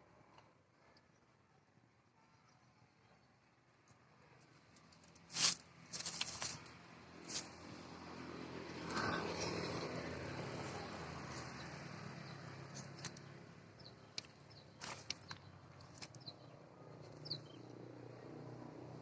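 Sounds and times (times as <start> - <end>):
engine running faintly: 4.0 - 19.0.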